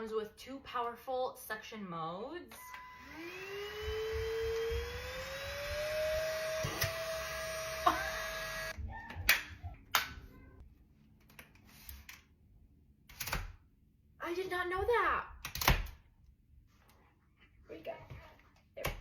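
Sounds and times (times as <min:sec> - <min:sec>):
vacuum motor whining: 0:02.5 - 0:08.8.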